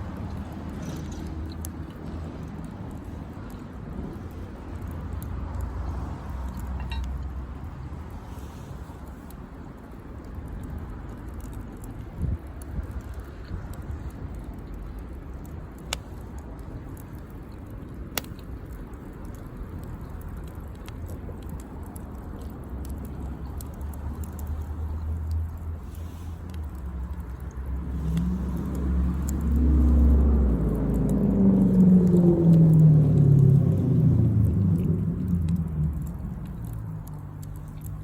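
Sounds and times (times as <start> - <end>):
sharp crackles: 0.0 - 38.0
vehicle engine approaching: 22.9 - 38.0.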